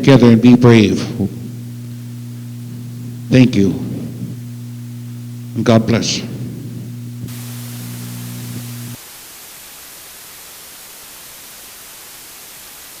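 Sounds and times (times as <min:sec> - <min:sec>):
low electrical hum: 0:00.0 - 0:09.0
white-noise static hiss: 0:00.0 - 0:13.0.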